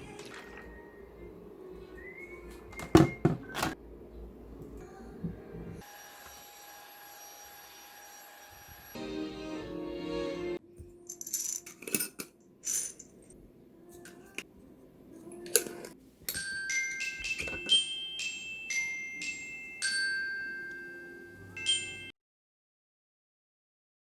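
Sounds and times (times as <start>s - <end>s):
glockenspiel-style mallet music: 16.3s - 22.2s.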